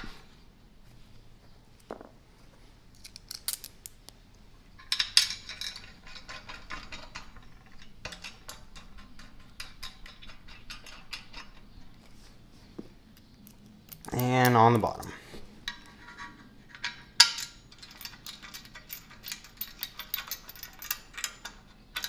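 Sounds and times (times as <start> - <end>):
metal bolt clinks and clicks: 3.0 - 4.1, 4.8 - 11.8, 13.1 - 14.8, 16.7 - 22.0
metal clatter: 4.8 - 11.9.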